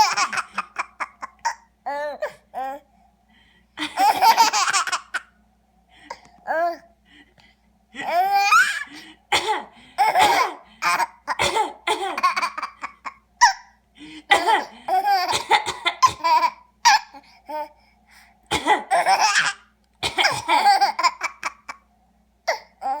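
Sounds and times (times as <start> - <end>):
baby laughing: 0.0 - 2.2, 3.8 - 5.3, 8.0 - 8.9, 18.9 - 19.6, 20.2 - 21.8
person coughing: 8.0 - 13.2, 14.1 - 17.0, 18.5 - 19.4, 20.0 - 21.1.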